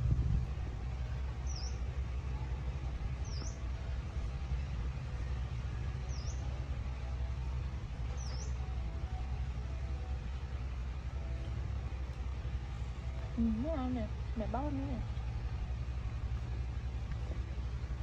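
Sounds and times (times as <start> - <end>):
steady low rumble: 0.0 - 18.0
small bird chirping: 1.4 - 1.8, 3.2 - 3.6, 6.1 - 6.5, 8.2 - 8.6.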